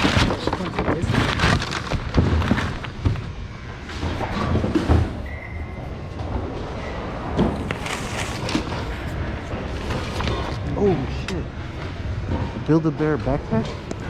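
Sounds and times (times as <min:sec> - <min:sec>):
faint steady high tone: 0:05.2 - 0:06.1.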